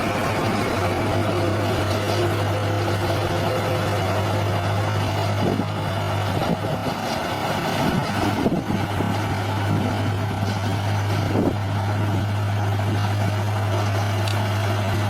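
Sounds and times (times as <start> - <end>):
heavy machinery diesel engine rumble: 0.0 - 15.0.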